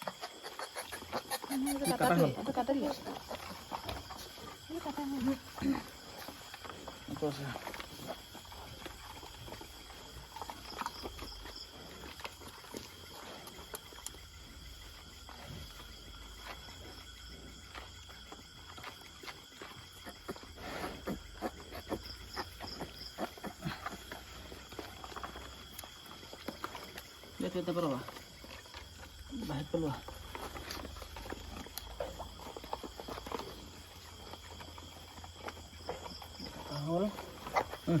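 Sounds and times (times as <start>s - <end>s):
pigs grunting: 0.0s - 13.6s, 19.7s - 25.5s
high insect drone: 0.0s - 38.0s.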